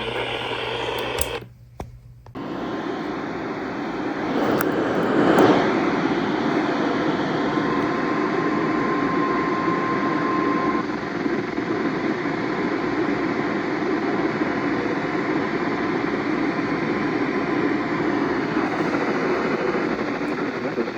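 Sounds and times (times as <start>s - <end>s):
radio static hiss: 0.0s - 1.5s, 2.3s - 20.9s
brief clicks: 0.0s - 2.0s
faint steady tone: 7.4s - 11.3s.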